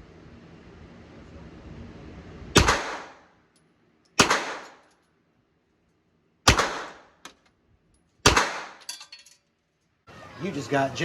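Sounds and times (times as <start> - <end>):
gunshots with ringing echo: 2.6 - 3.2, 4.2 - 4.8, 6.5 - 7.2, 8.2 - 8.9.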